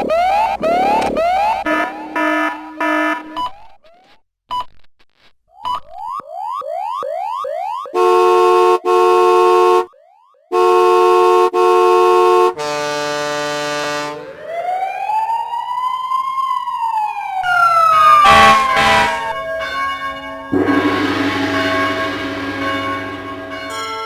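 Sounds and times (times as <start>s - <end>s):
low horn tone: 0.0s - 3.4s, 10.6s - 14.3s, 18.0s - 24.0s
rising siren sweeps: 0.0s - 3.8s, 13.7s - 24.0s
siren wailing: 0.0s - 4.0s, 6.0s - 11.4s, 12.7s - 24.0s
vehicle horn blasts: 1.7s - 3.4s, 8.0s - 9.9s, 10.6s - 14.2s, 18.1s - 24.0s.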